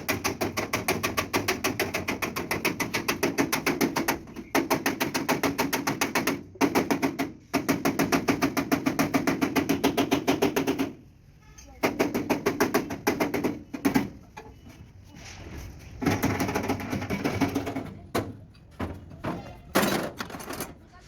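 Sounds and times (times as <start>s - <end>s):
rapid hammering on sheet metal: 0.0s - 11.1s, 11.8s - 14.2s, 16.0s - 18.4s.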